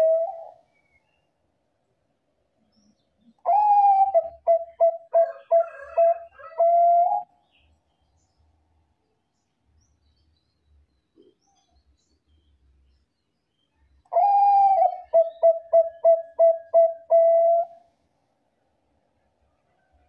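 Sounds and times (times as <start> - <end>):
zebra dove cooing: 0.0 - 0.6, 3.4 - 7.3, 14.1 - 17.8.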